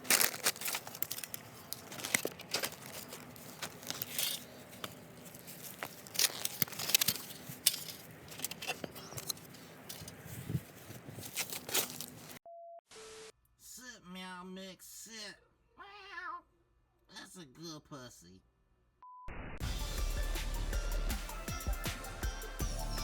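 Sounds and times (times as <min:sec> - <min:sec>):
rubbish rustling in dumpster: 0:00.0 - 0:12.4.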